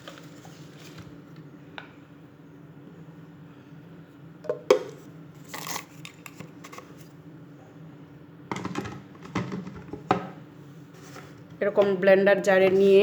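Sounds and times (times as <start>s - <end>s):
faint steady hum: 0.0s - 13.0s
clatter of kitchen items: 8.5s - 10.4s.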